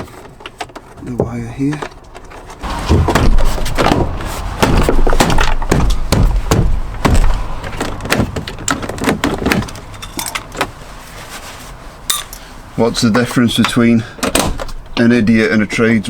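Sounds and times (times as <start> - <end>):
door panel knocks and clicks: 2.9 - 9.9.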